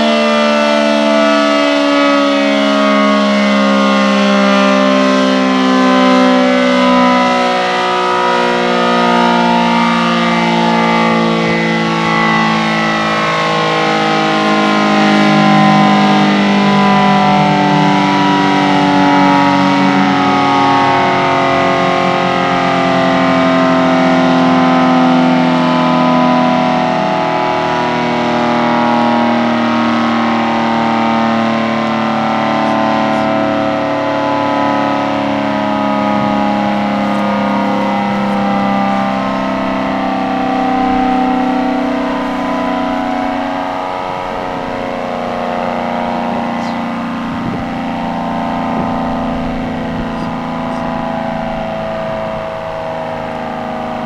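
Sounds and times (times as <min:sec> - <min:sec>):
warning siren steady tone: 0:00.0 - 0:54.0.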